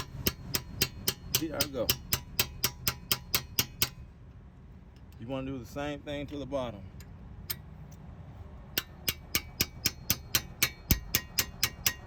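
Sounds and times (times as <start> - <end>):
ratchet wrench clicking: 0.0 - 4.0, 8.8 - 12.0.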